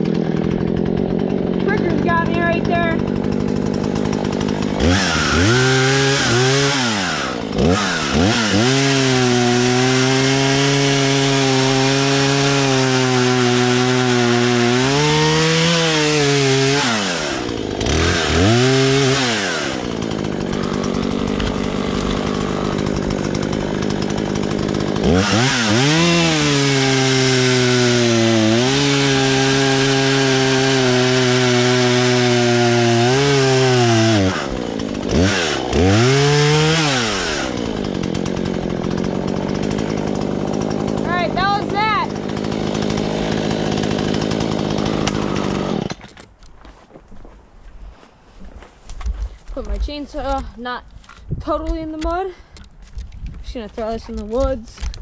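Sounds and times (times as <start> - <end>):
chainsaw cutting wood: 0.0 - 46.8, 47.9 - 55.0.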